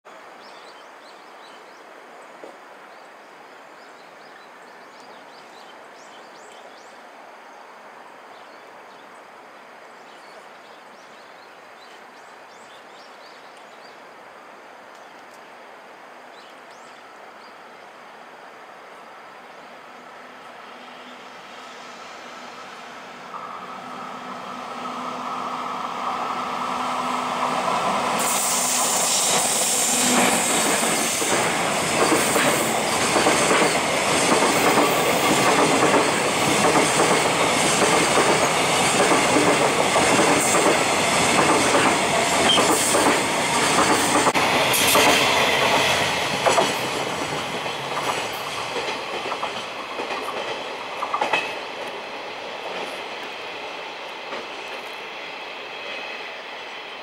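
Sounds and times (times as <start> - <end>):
freight train passing: 15.8 - 57.0.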